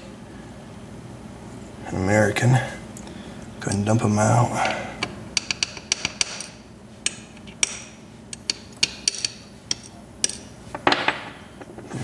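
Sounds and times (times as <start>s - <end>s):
metal pins clicking on hard surface: 5.4s - 11.3s.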